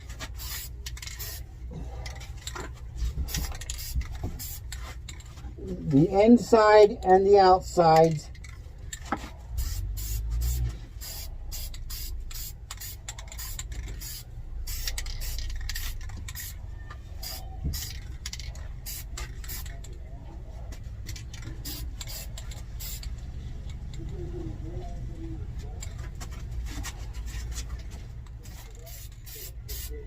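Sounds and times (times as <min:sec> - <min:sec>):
spray paint can hissing: 0:00.3 - 0:01.4, 0:03.3 - 0:04.8, 0:09.6 - 0:16.6, 0:17.2 - 0:19.7, 0:21.6 - 0:23.1, 0:28.8 - 0:30.0.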